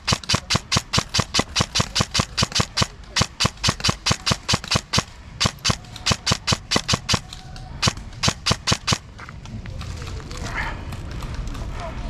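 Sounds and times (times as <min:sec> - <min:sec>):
airsoft gun shots: 0:00.0 - 0:09.2.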